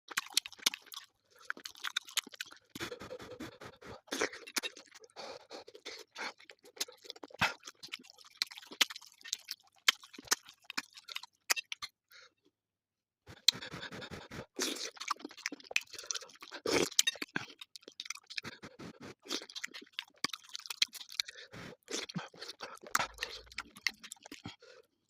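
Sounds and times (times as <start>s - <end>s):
person chewing with wet smacks: 0.1s - 12.0s, 13.3s - 24.6s.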